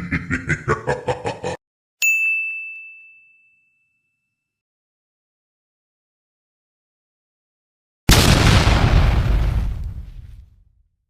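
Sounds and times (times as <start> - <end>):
burst of laughter: 0.0 - 1.6.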